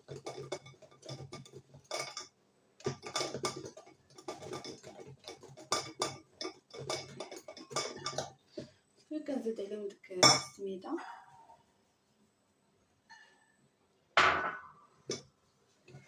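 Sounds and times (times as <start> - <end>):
utensil clinking against bowl: 0.0 - 8.4
utensil stirring batter in bowl: 0.0 - 8.9.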